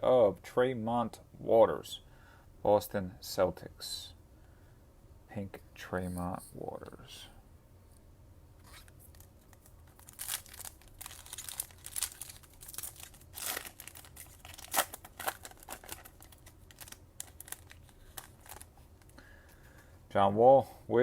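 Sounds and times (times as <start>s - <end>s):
wrapper tearing and crinkling: 8.6s - 19.1s.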